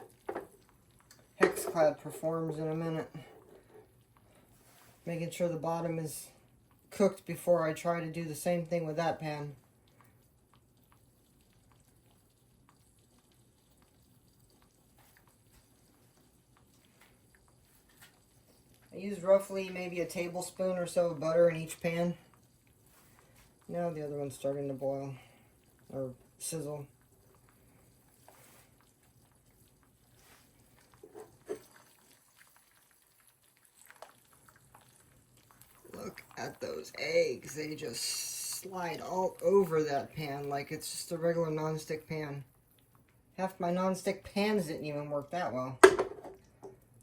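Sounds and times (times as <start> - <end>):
eggs frying crackle: 0.0 - 47.0.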